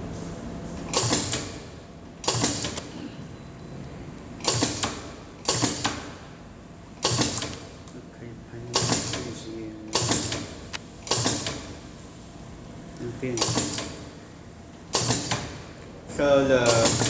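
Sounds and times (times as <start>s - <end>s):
spot welder double clacks: 0.9s - 2.9s, 4.4s - 6.2s, 7.0s - 7.7s, 8.7s - 11.8s, 13.3s - 14.1s, 14.9s - 15.7s, 16.6s - 17.0s.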